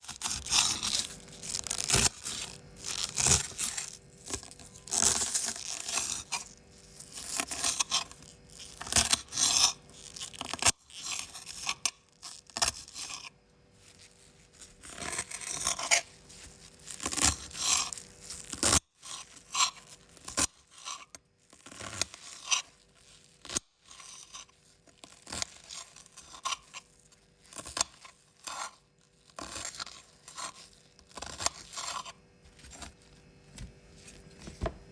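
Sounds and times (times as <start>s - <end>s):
knife slicing crisp vegetables: 0.1s - 6.5s.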